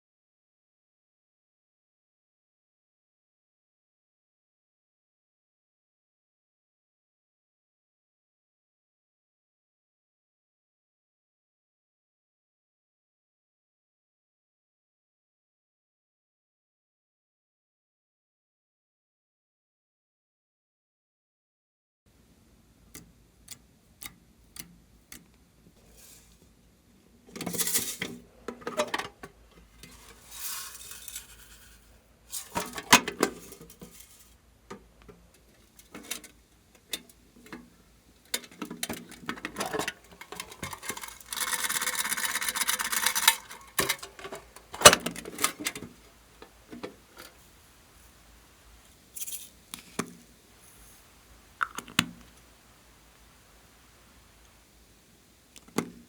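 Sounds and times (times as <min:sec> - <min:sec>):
rubbing and scraping: 0:39.4 - 0:45.8
steady hiss: 0:45.4 - 0:56.0.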